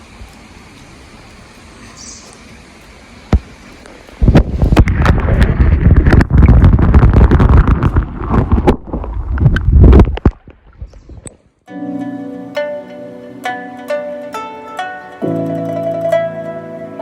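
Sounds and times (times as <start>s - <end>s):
wind buffeting microphone: 3.3s - 11.4s.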